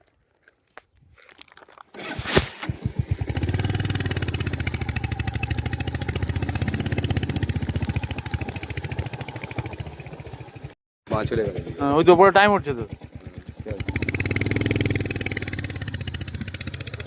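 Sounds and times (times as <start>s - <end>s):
vehicle engine starting and running: 1.9s - 17.0s.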